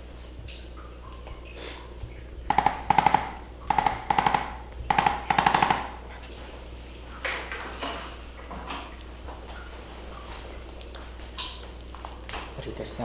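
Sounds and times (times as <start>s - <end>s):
rapid mechanical clicking: 2.5s - 6.0s.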